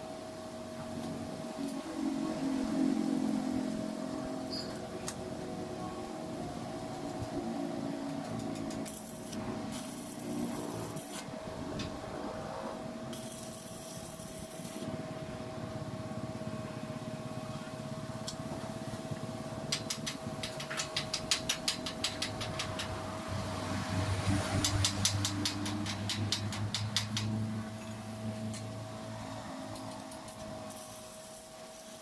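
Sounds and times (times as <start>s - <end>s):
steady hum: 0.0s - 32.0s
welding arc crackling: 6.9s - 11.4s, 13.1s - 15.0s, 29.5s - 32.0s
welding arc hissing: 8.3s - 11.3s, 13.1s - 15.0s, 29.6s - 32.0s.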